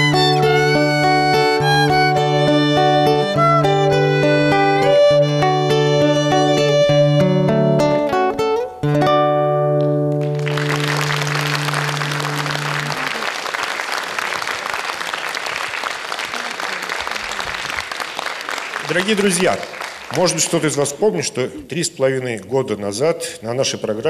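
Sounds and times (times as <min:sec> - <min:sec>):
audience applause: 0:10.1 - 0:21.0.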